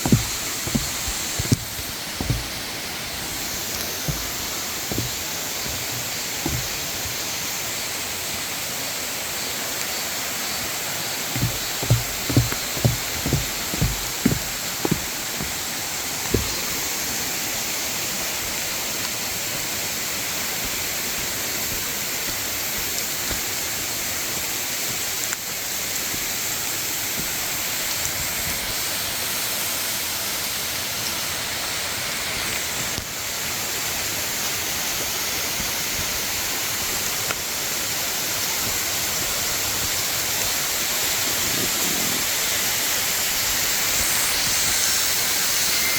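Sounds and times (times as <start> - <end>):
low thuds: 0.0 - 7.2, 11.3 - 16.7.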